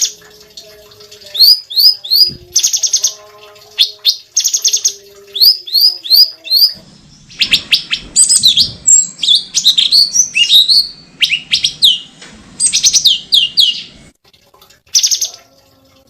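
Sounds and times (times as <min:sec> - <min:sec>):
bird singing sharp chirps and trills: 0:03.8 - 0:13.9.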